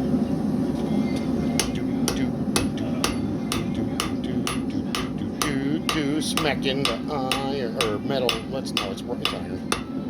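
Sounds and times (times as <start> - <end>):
steady low rumble: 0.0 - 10.0
hammer striking iron on anvil: 1.6 - 10.0.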